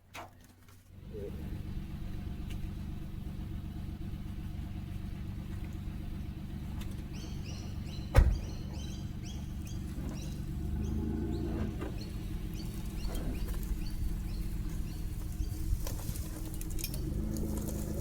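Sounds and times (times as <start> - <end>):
car engine humming: 0.6 - 18.0.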